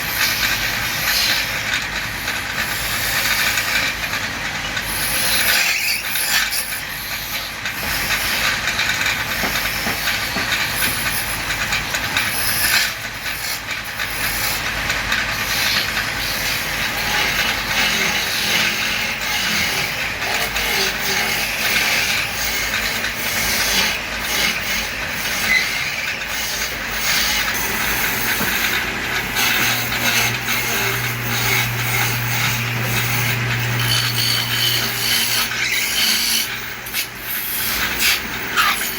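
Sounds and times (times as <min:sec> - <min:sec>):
turning tool scraping wood: 0:00.0 - 0:38.9.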